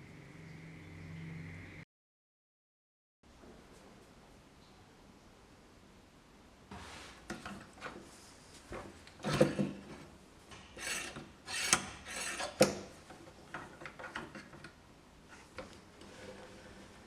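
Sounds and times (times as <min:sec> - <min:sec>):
rasping strokes on wood: 0:10.8 - 0:12.6.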